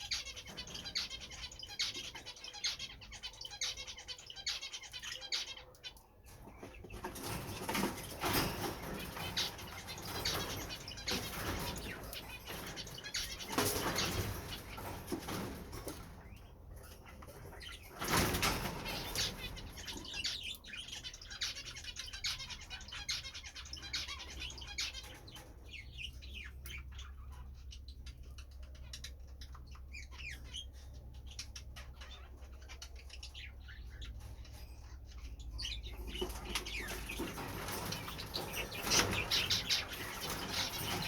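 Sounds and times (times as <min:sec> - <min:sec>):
birds chirping and twittering: 0:00.0 - 0:41.0
birds fluttering wings: 0:06.3 - 0:20.6, 0:35.6 - 0:41.0.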